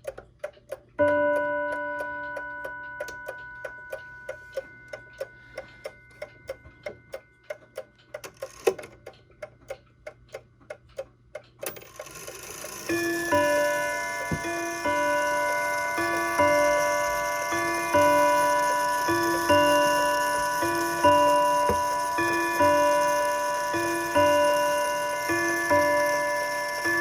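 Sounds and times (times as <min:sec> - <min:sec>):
clock ticking: 0:00.0 - 0:27.0
clock striking gong rod: 0:12.0 - 0:27.0.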